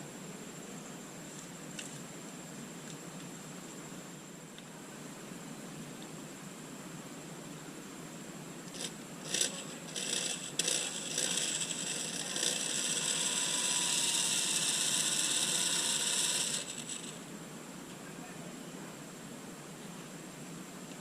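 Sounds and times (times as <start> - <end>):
power tool driving screws: 8.7 - 17.2.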